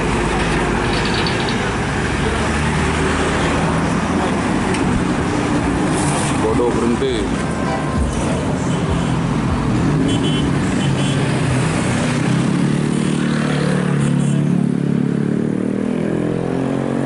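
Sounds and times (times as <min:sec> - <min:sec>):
bus diesel engine running: 0:00.0 - 0:08.6.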